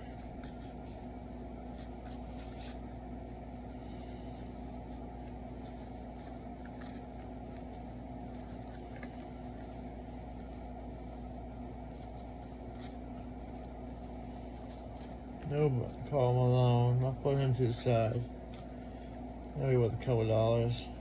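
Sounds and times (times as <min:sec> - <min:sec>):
low room hum: 0:00.0 - 0:21.0
trading cards being flipped: 0:01.7 - 0:03.0, 0:05.2 - 0:11.2, 0:11.8 - 0:14.0.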